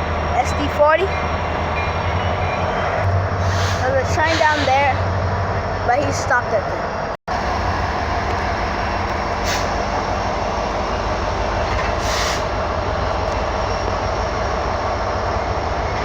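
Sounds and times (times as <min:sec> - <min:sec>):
freight train rumbling past: 0:00.0 - 0:16.0
brief air hisses: 0:03.4 - 0:04.7, 0:12.0 - 0:12.5.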